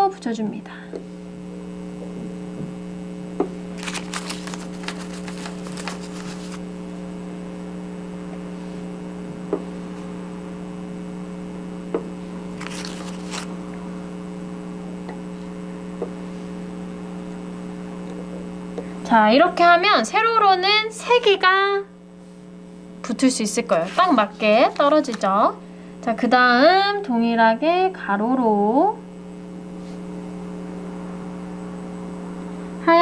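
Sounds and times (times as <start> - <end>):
steady electrical hum: 0.0 - 33.0
quick crackling rustle: 3.8 - 6.6, 12.6 - 13.6, 23.7 - 25.2.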